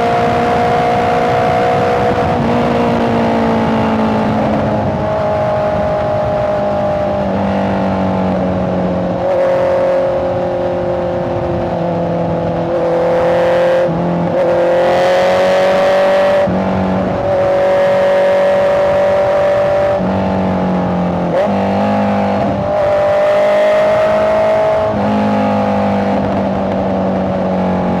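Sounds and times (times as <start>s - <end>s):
motorcycle engine revving: 0.0s - 28.0s.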